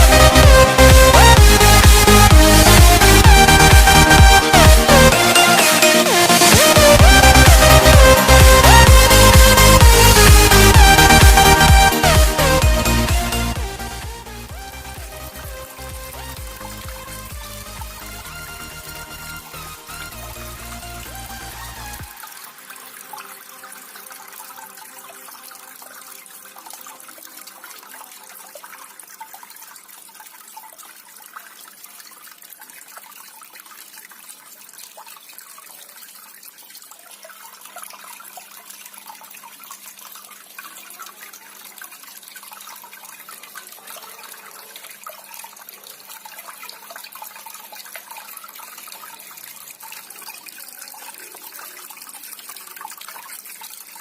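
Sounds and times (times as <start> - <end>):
water trickling down fountain: 14.6 - 54.0.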